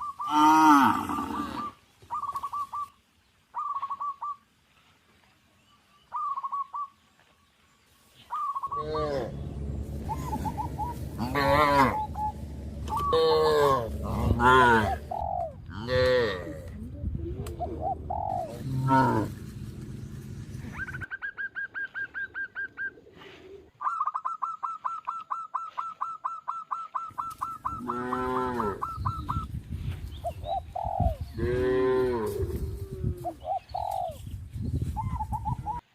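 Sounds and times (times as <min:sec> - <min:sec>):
cattle mooing: 0:08.7 - 0:15.2, 0:18.5 - 0:20.7, 0:27.8 - 0:28.9
high chirping notes: 0:08.7 - 0:15.6.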